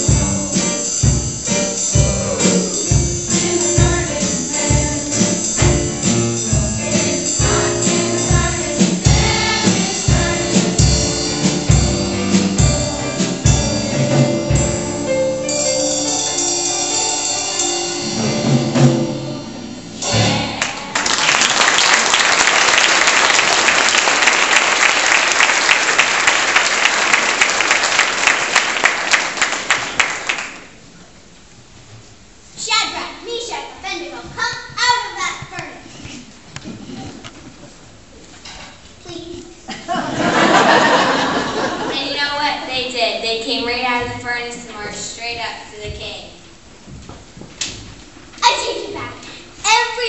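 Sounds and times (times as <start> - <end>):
drums: 0.0 - 24.5, 30.7 - 50.0
choir singing: 1.9 - 13.5, 14.6 - 21.1
audience applause: 20.4 - 30.7.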